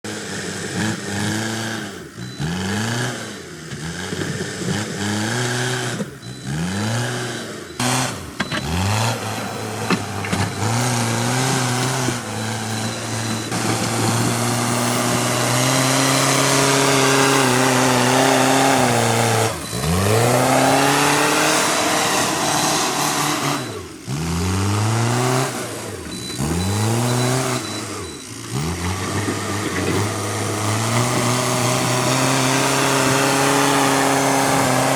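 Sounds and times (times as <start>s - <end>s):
diesel engine revving: 0.0s - 34.9s.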